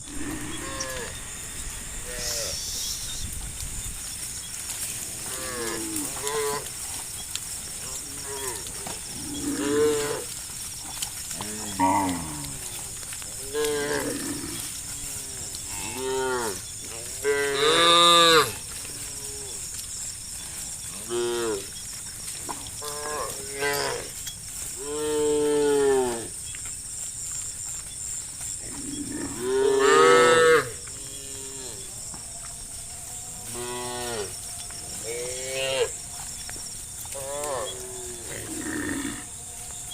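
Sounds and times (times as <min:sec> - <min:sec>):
cows mooing: 0:00.0 - 0:03.0, 0:05.0 - 0:06.8, 0:07.9 - 0:12.8, 0:13.4 - 0:14.8, 0:28.6 - 0:31.9, 0:33.1 - 0:36.3, 0:37.1 - 0:39.4.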